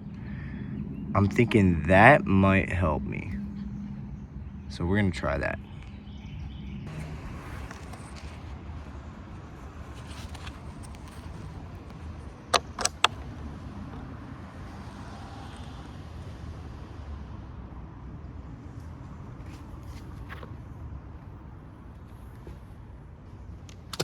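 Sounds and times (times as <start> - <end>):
steady low rumble: 0.0 - 13.8
sharp clicks: 12.5 - 13.2.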